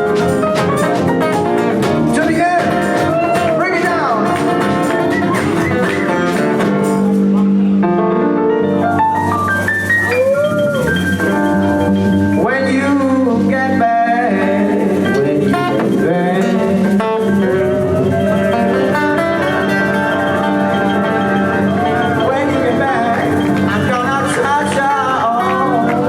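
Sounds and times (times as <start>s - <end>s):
live band playing: 0.0s - 26.0s.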